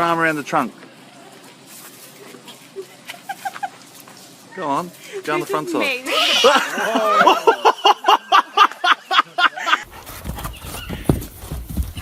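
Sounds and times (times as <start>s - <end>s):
dog yelping: 9.9s - 11.6s.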